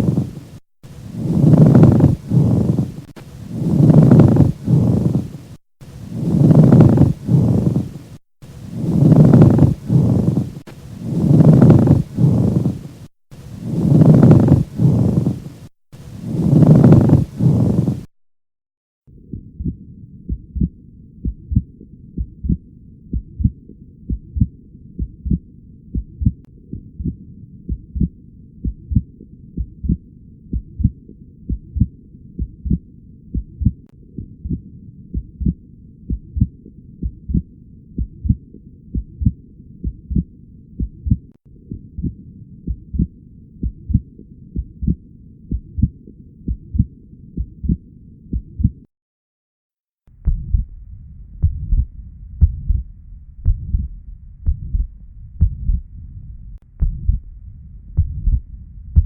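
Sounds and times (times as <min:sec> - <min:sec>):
heartbeat thumps: 0:00.0 - 0:00.4, 0:01.2 - 0:05.2, 0:06.0 - 0:07.8, 0:08.7 - 0:10.4, 0:11.2 - 0:12.7, 0:19.3 - 0:48.9, 0:50.2 - 0:59.0
steady low background noise: 0:50.3 - 0:59.0.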